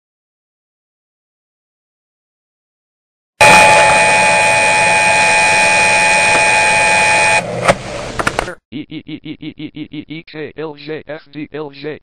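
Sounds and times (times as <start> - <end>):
steady whining tones: 3.4 - 8.4
harsh electronic static: 3.4 - 8.5.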